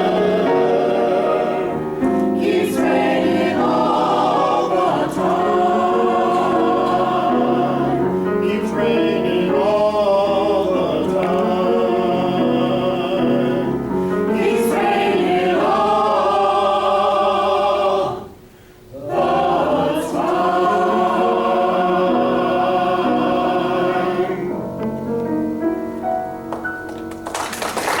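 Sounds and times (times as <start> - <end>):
choir singing held chords: 0.0 - 24.9
audience applause: 26.9 - 28.0.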